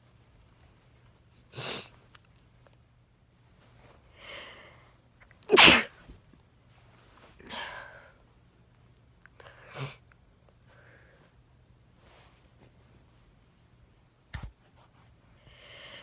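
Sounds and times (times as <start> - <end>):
person sneezing: 5.5 - 5.9.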